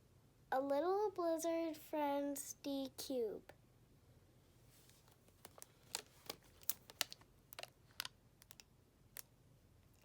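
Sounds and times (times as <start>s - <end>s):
toy box clicks and taps: 6.6s - 9.3s.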